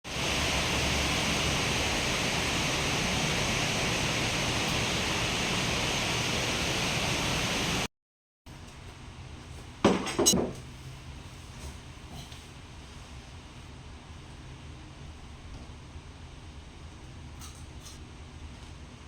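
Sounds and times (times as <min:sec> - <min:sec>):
heavy rain: 0:00.1 - 0:07.9.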